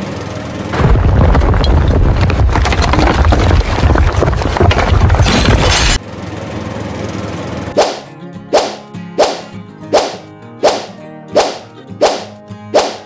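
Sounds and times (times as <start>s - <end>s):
rough crackling engine rumble: 0.0s - 8.2s
sharp swoosh: 7.8s - 13.0s.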